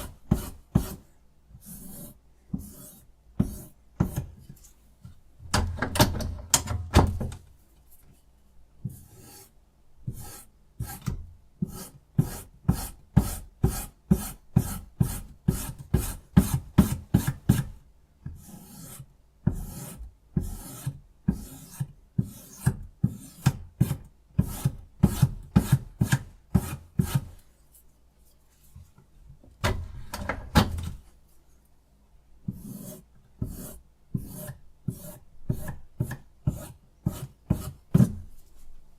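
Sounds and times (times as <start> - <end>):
sharpening stone rasping on blade: 32.6 - 35.7.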